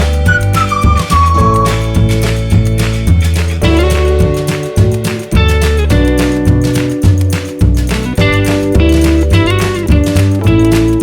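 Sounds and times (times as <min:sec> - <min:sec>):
whistled melody: 0:00.0 - 0:02.4
background music with beat and bass: 0:00.0 - 0:11.0.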